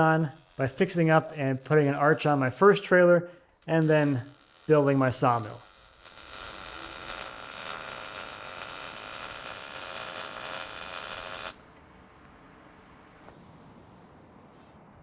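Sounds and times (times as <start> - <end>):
welding arc sizzling: 0.0 - 11.7.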